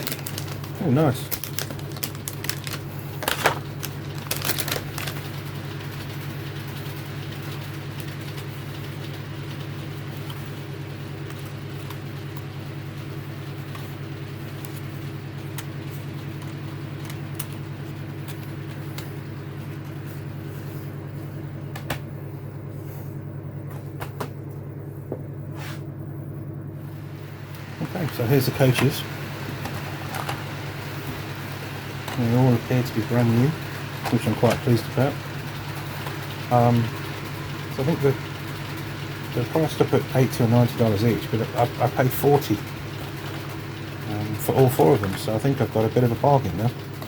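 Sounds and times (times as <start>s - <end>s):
packaging clicks and rustles: 0.0s - 6.0s, 13.7s - 20.0s
steady low hum: 0.0s - 47.0s.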